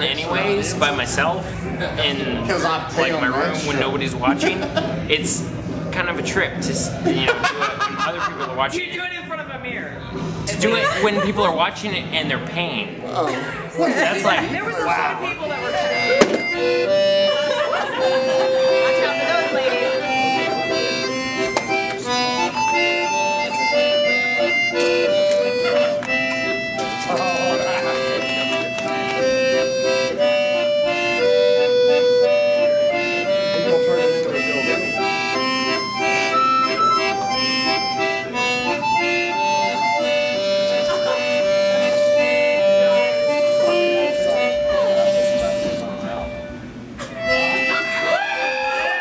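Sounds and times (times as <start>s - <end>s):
instrumental melody with chords: 14.2s - 49.0s.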